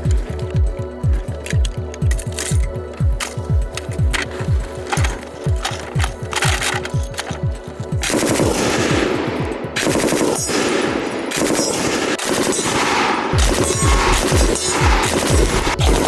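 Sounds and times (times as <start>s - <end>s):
machine gun automatic fire: 4.1s - 16.0s.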